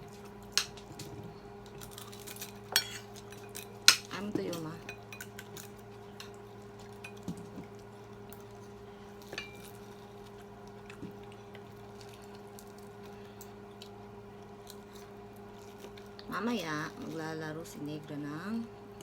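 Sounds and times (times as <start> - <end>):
cutlery scraping plates: 2.7 - 5.4.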